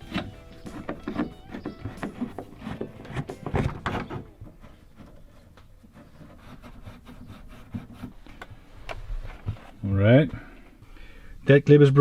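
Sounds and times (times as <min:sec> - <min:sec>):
ticks and rubbing of panel: 0:00.0 - 0:08.6.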